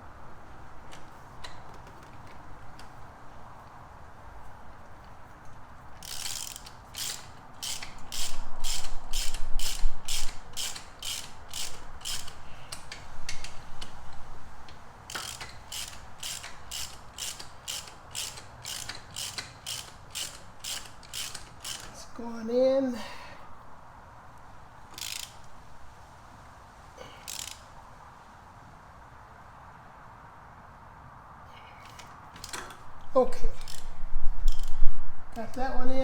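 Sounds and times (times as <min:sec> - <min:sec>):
hand ratchet clicking: 0:06.0 - 0:22.2, 0:24.9 - 0:25.6, 0:27.1 - 0:27.7, 0:31.8 - 0:32.8, 0:33.5 - 0:34.8.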